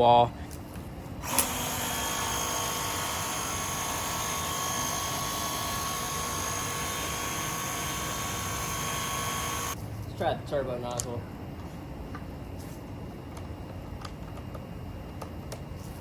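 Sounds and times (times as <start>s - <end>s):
pump motor whining: 1.2s - 9.8s.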